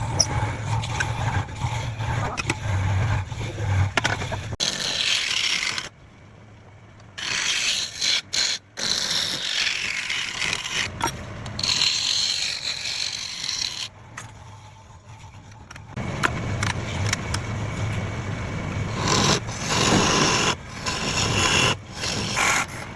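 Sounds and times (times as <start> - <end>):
turning tool scraping wood: 0.0 - 5.9, 7.2 - 16.0, 18.9 - 22.9
wood lathe running: 0.0 - 5.9, 18.9 - 22.8.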